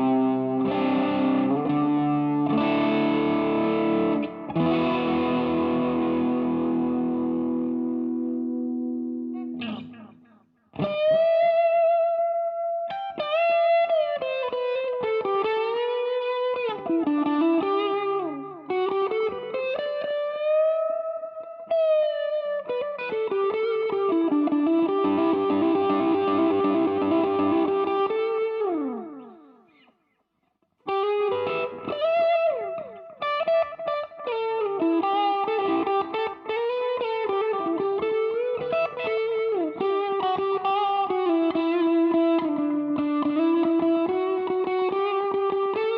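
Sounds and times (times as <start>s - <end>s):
guitar chord ringing: 0.0s - 29.8s
overdriven electric guitar lead: 0.0s - 29.9s, 30.8s - 45.9s.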